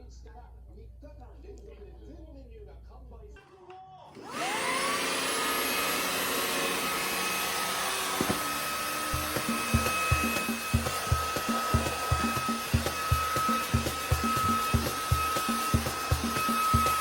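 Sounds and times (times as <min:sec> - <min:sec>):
vacuum cleaner whining: 0:04.1 - 0:17.0
music with low beat: 0:09.2 - 0:17.0.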